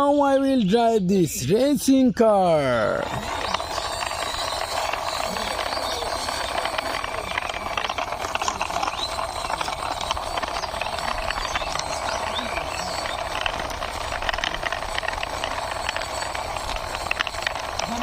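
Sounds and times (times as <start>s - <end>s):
toy car wheels rattling: 2.4s - 18.0s.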